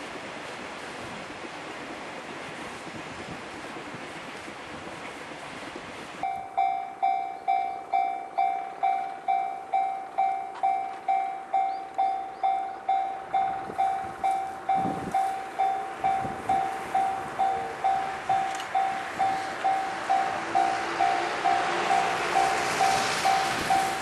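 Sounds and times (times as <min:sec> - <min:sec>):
wind noise: 0:00.0 - 0:24.0
level crossing alarm clanging: 0:06.2 - 0:24.0.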